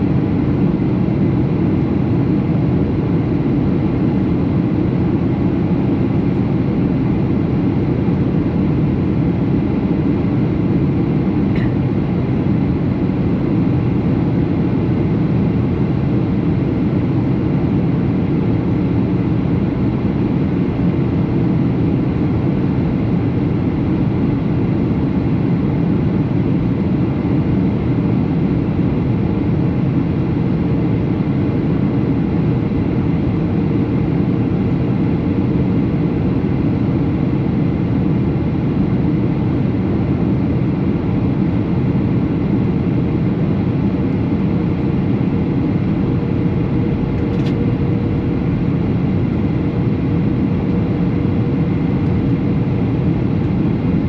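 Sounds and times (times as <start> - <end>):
faint constant hum: 0.0 - 54.0
jet engine and airflow noise: 0.0 - 54.0
brief click: 47.2 - 47.6.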